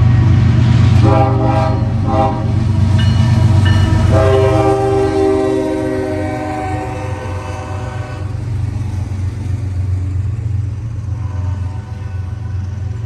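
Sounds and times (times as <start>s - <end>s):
low train rumble: 0.0s - 13.0s
locomotive horn: 1.0s - 2.6s, 3.6s - 8.4s, 11.1s - 13.0s.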